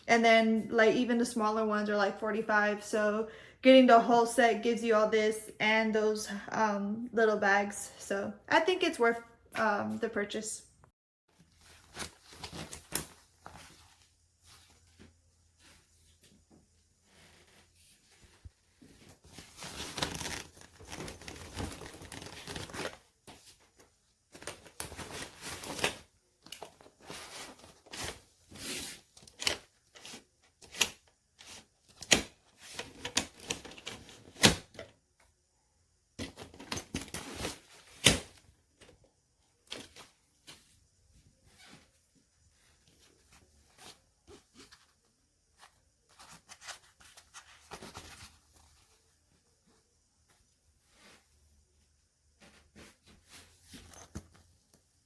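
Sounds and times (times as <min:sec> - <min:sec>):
rustling and crinkling: 0:11.3 - 0:34.8, 0:36.2 - 0:55.0.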